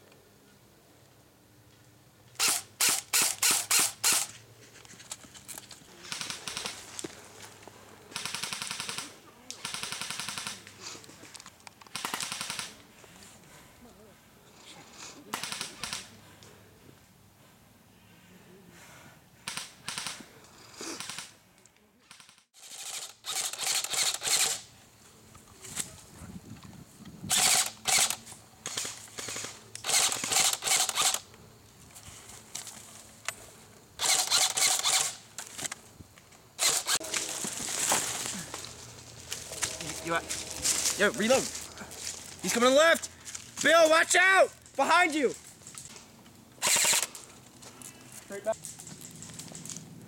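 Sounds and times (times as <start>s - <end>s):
airsoft guns firing bursts: 6.0s - 6.9s, 8.1s - 10.7s, 11.9s - 12.8s, 15.3s - 16.1s, 22.0s - 24.6s, 27.3s - 31.2s, 34.0s - 35.2s, 46.6s - 47.2s.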